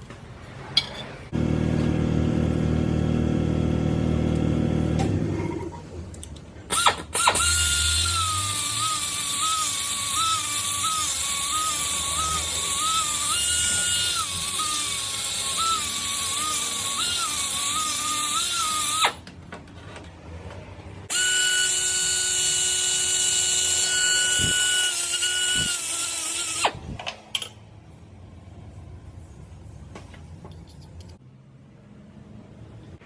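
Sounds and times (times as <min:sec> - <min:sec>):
power tool hissing and whining: 0:06.8 - 0:19.2.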